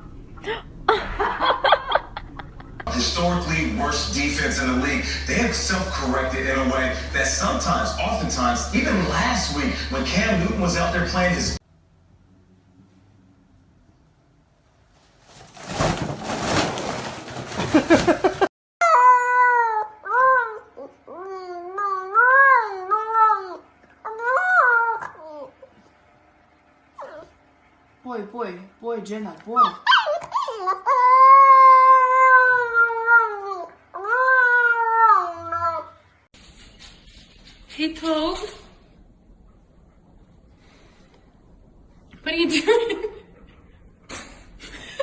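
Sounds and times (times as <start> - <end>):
cat yowling: 29.9 - 35.9.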